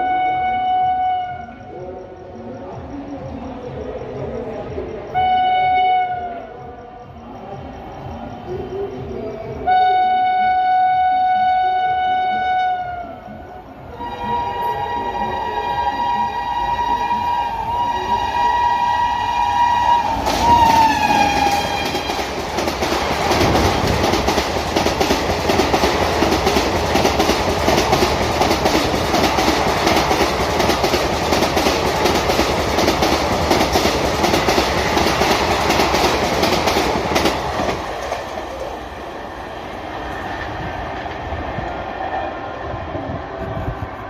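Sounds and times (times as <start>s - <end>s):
locomotive horn: 0.0s - 1.7s, 5.2s - 6.4s, 9.7s - 22.3s
train rushing past: 0.0s - 44.0s
wheels clacking over rail joints: 20.1s - 39.4s.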